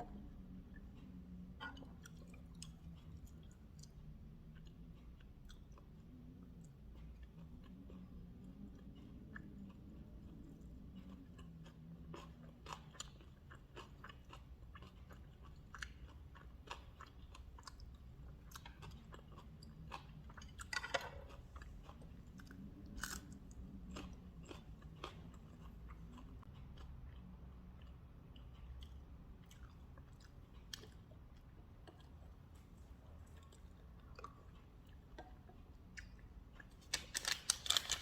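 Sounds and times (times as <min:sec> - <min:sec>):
person chewing food: 0:00.1 - 0:38.0.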